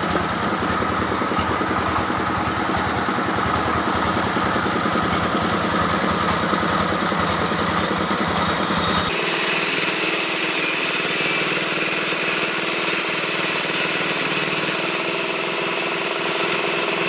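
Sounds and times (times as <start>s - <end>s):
saw engine running: 0.0s - 17.0s.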